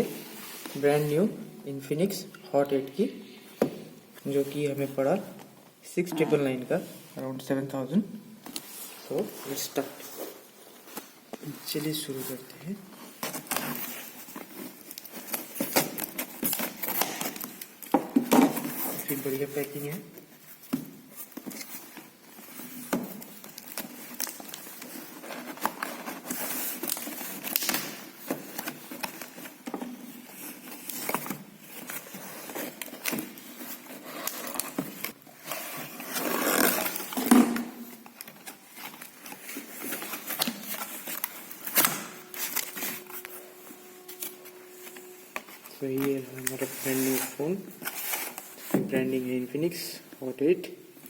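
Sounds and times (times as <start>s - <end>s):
cardboard packaging rustling: 8.5s - 49.2s.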